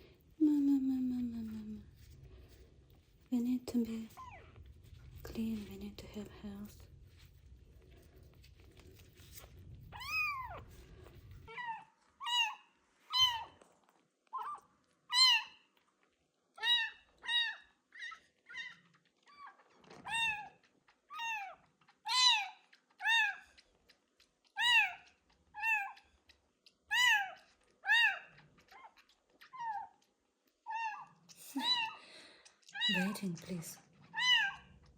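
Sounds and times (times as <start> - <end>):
low steady noise: 0.0 - 14.0
kitten meowing: 10.0 - 10.6, 11.5 - 13.5, 14.4 - 15.5, 16.6 - 17.6, 19.5 - 20.5, 22.1 - 23.4, 24.6 - 25.0, 25.6 - 26.0, 26.9 - 28.2, 30.7 - 32.0, 34.1 - 34.7.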